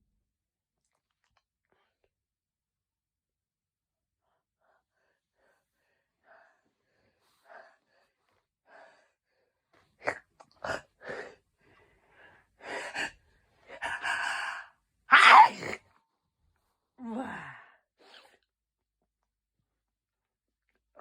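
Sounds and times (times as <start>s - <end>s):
person gasping and sneezing: 13.8s - 15.8s.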